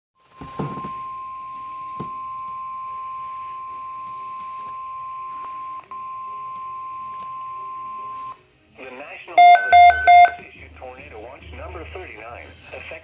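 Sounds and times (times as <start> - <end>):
steady high alarm beep: 9.4 - 10.4.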